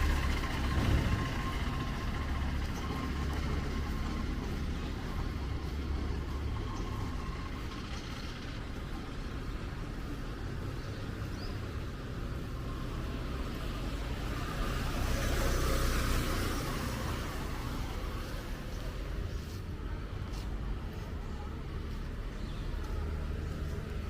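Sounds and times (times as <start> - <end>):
street traffic rumble: 0.0 - 24.0
tyres hissing on wet road: 12.9 - 20.8.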